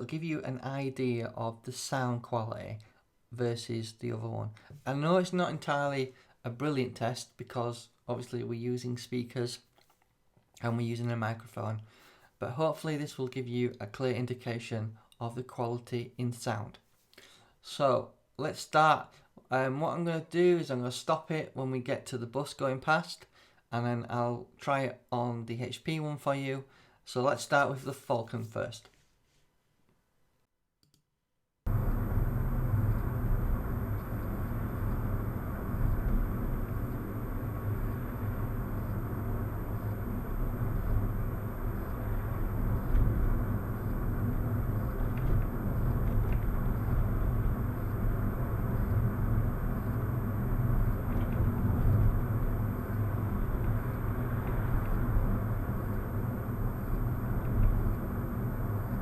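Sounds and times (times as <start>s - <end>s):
low rumble of engine and tyres: 31.7s - 59.0s.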